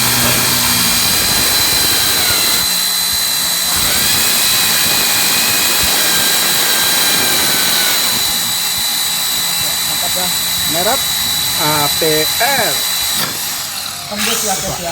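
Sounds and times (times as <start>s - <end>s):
hammer drill boring into concrete: 0.0s - 14.9s.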